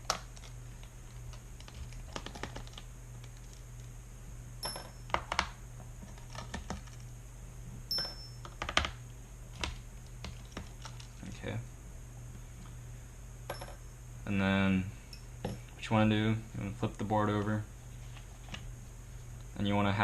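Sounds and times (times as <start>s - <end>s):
plastic keyboard being handled: 0.0s - 3.6s, 5.1s - 7.1s, 8.4s - 9.0s, 9.6s - 11.2s.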